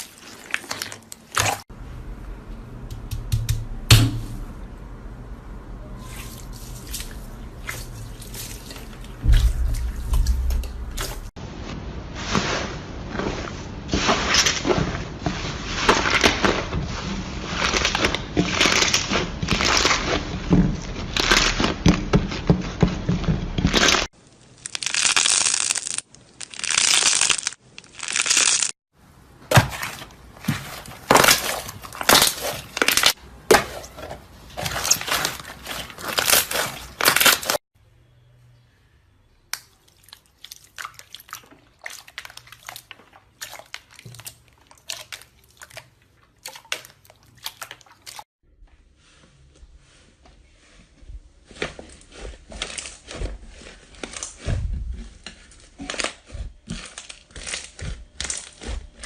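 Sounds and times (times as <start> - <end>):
slime crackling and popping: 23.7 - 28.7, 55.3 - 59.0.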